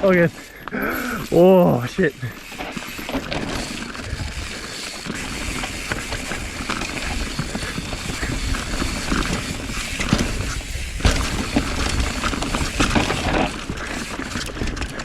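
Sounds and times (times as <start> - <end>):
bike rattling and clicking: 0.0 - 15.0
tyres crunching over stones: 0.0 - 15.0
wind rumbling on microphone: 3.6 - 15.0.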